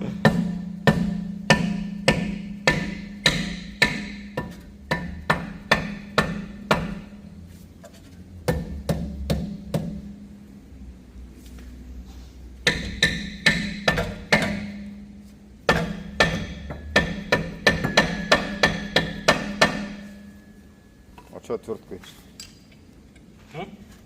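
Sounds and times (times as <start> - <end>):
hammer striking ringing metal disc: 0.0 - 7.2, 12.7 - 20.8.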